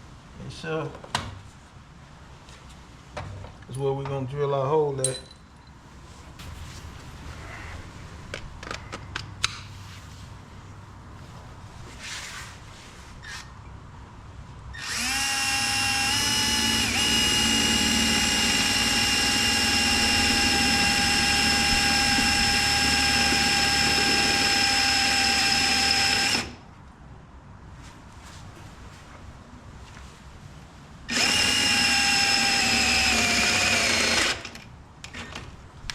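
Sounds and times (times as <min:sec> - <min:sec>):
power drill whine: 0:14.8 - 0:26.6, 0:31.1 - 0:34.6.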